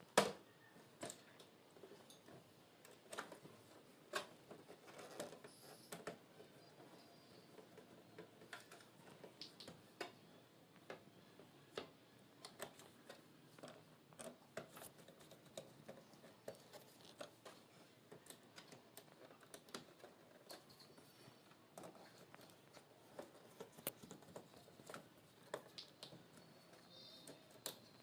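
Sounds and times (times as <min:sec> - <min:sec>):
faint small clicks and taps: 0:01.0 - 0:28.0.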